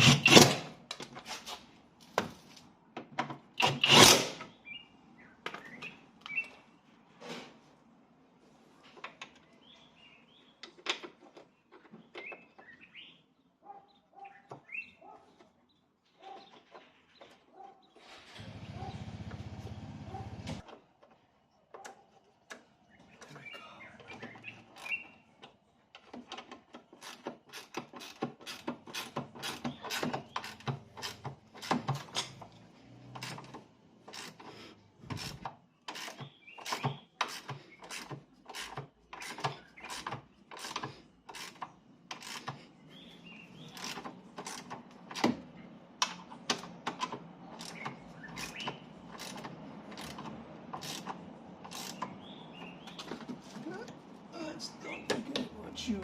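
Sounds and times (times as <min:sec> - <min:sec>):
birds chirping: 0:04.4 - 0:07.2, 0:09.0 - 0:20.4, 0:21.1 - 0:26.0, 0:29.4 - 0:31.6, 0:35.6 - 0:56.0
hand tools clicking and knocking: 0:24.0 - 0:54.2.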